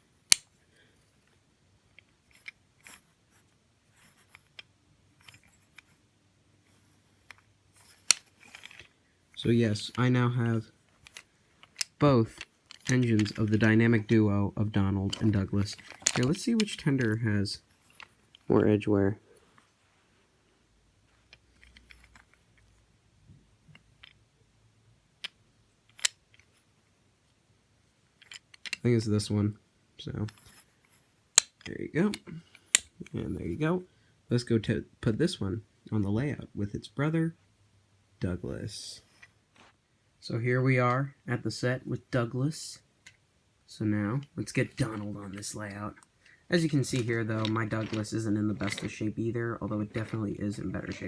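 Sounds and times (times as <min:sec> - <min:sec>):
wooden toy pieces clicking: 0:01.9 - 0:03.0, 0:07.2 - 0:08.9, 0:09.8 - 0:13.7, 0:15.1 - 0:17.2, 0:25.2 - 0:26.5, 0:28.2 - 0:28.8, 0:31.3 - 0:33.1, 0:46.0 - 0:49.0.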